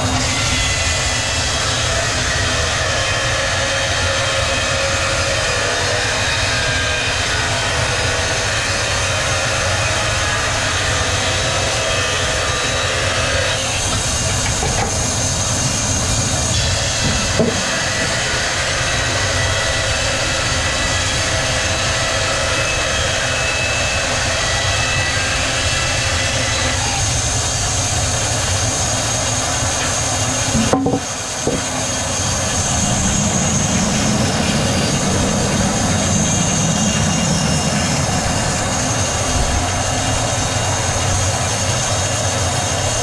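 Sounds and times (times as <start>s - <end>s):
sawmill machinery din: 0.0s - 43.0s
knock: 17.1s - 17.7s, 30.6s - 31.8s.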